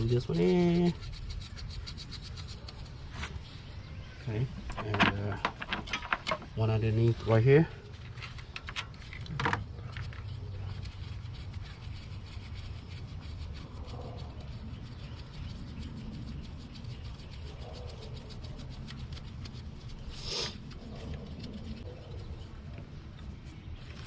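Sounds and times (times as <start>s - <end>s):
scraping rustle: 0.0s - 16.4s
bolt turned by hand tool: 4.6s - 6.6s, 8.0s - 10.2s.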